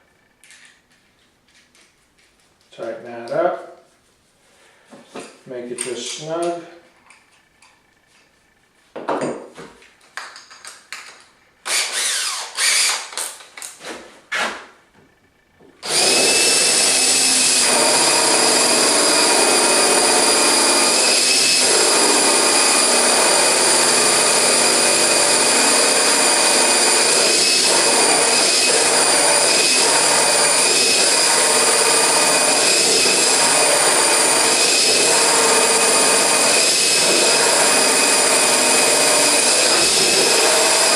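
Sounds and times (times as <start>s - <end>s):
electric drill whining: 11.6s - 13.2s, 15.8s - 40.9s.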